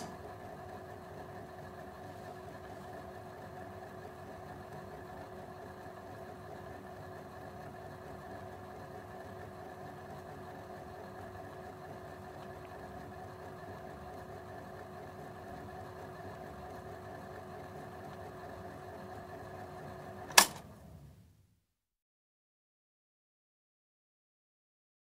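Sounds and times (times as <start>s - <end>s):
typewriter motor humming: 19.1s - 20.6s
typewriter switch click: 20.3s - 20.7s.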